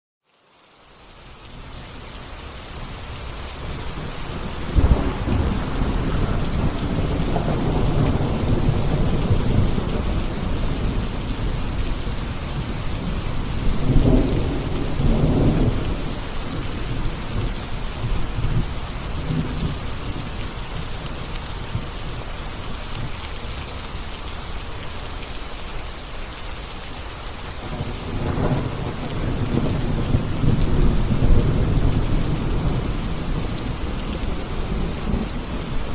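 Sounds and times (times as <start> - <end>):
steady rain: 0.2 - 35.9
rolling thunder: 3.7 - 20.8, 27.7 - 35.9
sharp thunder crack: 4.6 - 11.1.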